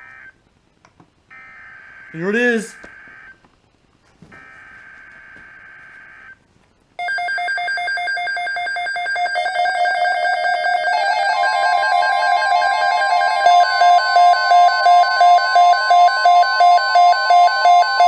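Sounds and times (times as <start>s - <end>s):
rapidly pulsing alarm beeps: 7.0s - 18.0s
steady tone: 9.0s - 18.0s.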